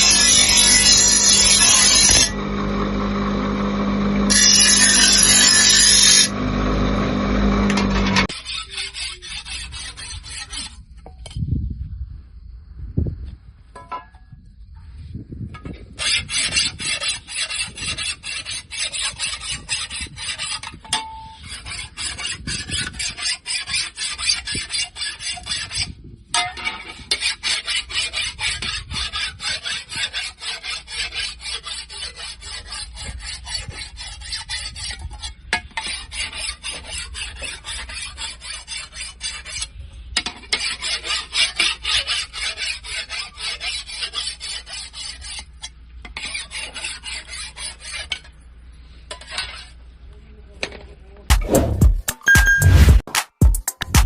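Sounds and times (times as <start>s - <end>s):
hand scraping on iron: 0.0s - 2.4s, 7.6s - 11.2s, 26.6s - 49.8s.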